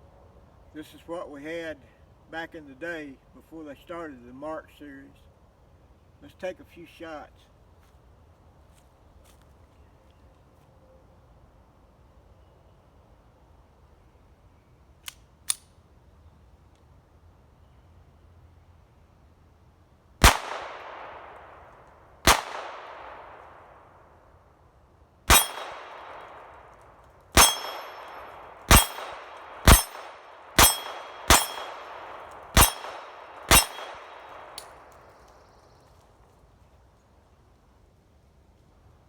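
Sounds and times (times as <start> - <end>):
pistol shots echoing: 20.2 - 21.5, 22.2 - 23.4, 25.3 - 26.6, 27.4 - 34.9
short metallic ring: 25.3 - 25.7, 27.4 - 31.8, 32.6 - 34.7.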